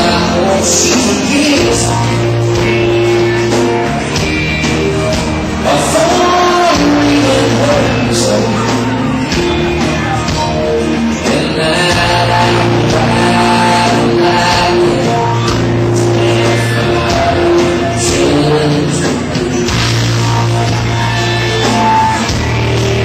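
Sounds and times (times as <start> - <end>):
live rock band playing: 0.0 - 23.0.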